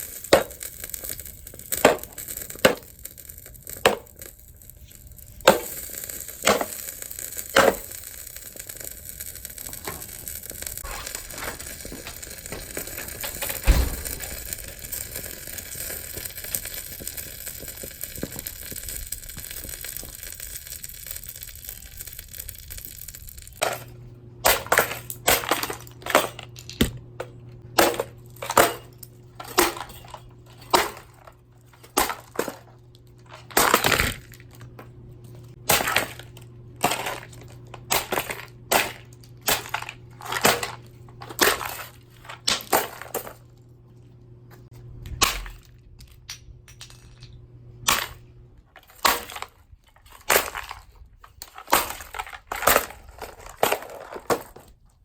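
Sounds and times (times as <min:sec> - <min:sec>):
steady hiss: 0:00.0 - 0:23.8.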